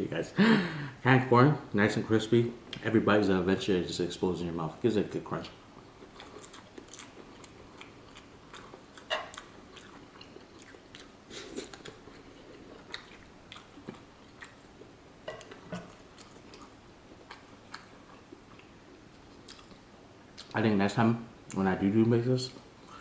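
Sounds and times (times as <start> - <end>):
person chewing food: 5.8 - 20.6.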